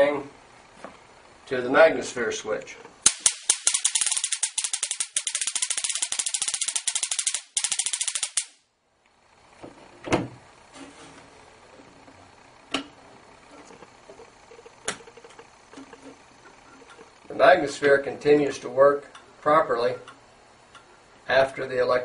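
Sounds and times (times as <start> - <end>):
electric spark crackle: 3.0 - 8.7.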